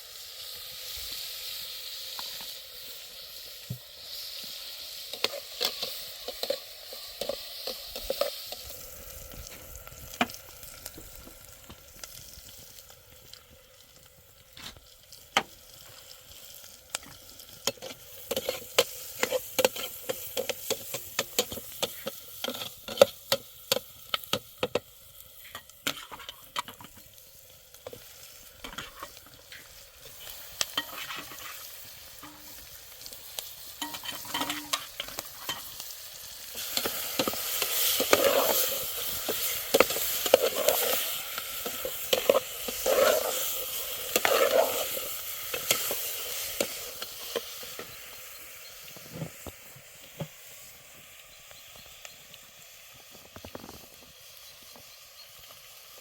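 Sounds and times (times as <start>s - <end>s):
steady hiss: 0.0s - 56.0s
scraping and rustling: 36.6s - 46.8s.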